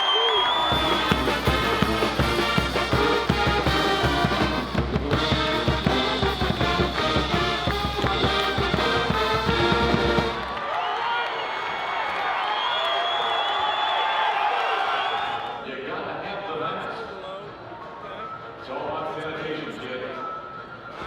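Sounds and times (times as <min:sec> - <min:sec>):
upbeat brass music with heavy beat: 0:00.6 - 0:10.6.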